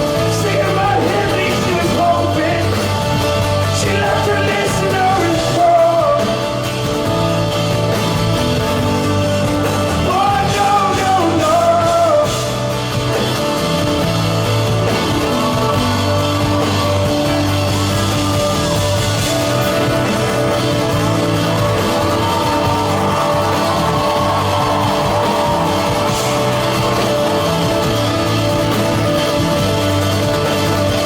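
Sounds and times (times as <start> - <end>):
person singing: 0.0 - 6.8, 9.9 - 12.8
bass line: 0.0 - 31.0
live band playing: 0.0 - 31.0.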